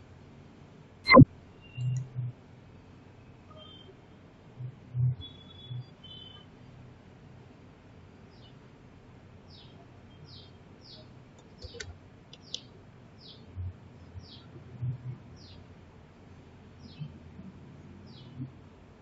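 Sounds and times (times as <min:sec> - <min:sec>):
bird chirping: 0:01.1 - 0:02.0, 0:03.5 - 0:03.9, 0:05.0 - 0:06.4, 0:09.5 - 0:13.5
soft clicks: 0:01.8 - 0:02.2, 0:11.4 - 0:12.7.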